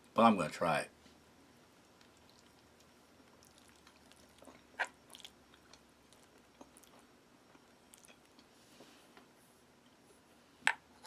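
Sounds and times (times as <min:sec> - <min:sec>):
person chewing with mouth clicks: 0:02.0 - 0:08.5.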